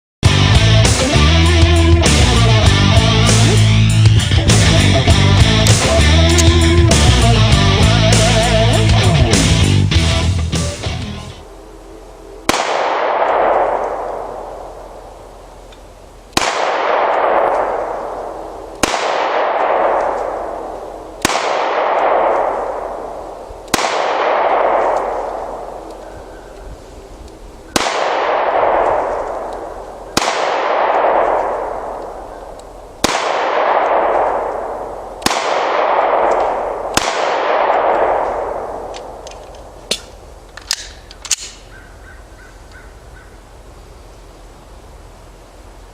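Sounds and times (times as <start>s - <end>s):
pistol shots with echo: 12.5s - 15.0s, 16.4s - 25.9s, 27.7s - 39.2s.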